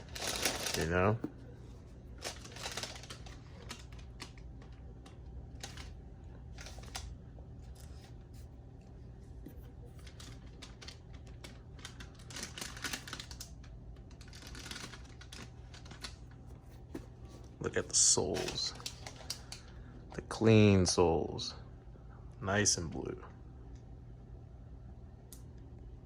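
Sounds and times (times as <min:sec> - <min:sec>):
packaging rustles and clicks: 0:00.0 - 0:07.1, 0:09.5 - 0:19.7.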